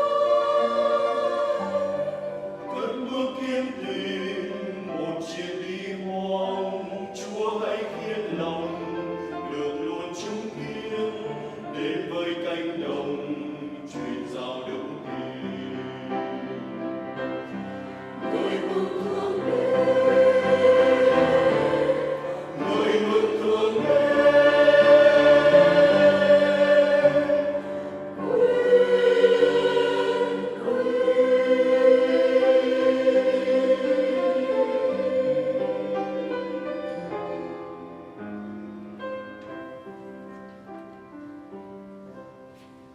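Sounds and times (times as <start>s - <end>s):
choir singing a hymn: 0.0s - 40.2s
musical accompaniment: 13.0s - 42.9s.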